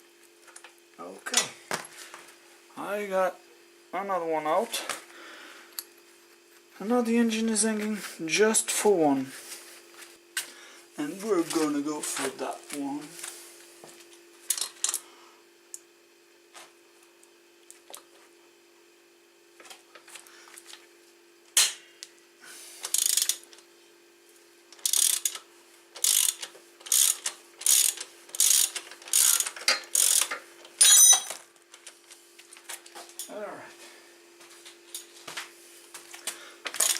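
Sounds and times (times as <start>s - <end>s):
socket ratchet wrench clicking: 22.9s - 23.4s, 24.8s - 25.4s, 26.0s - 30.4s.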